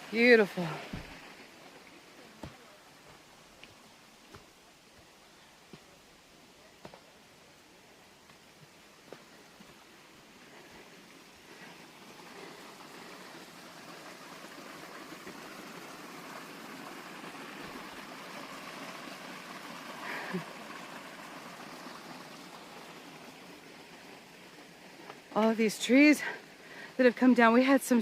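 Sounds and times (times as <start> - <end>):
stream water rushing over rocks: 0.0 - 28.0.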